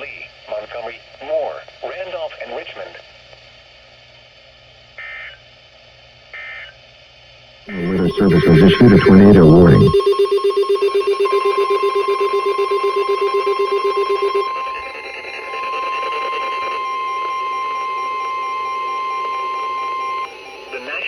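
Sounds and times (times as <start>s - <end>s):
rapid lower pulsing beep: 7.7s - 21.0s
steady high alarm beep: 7.7s - 21.0s.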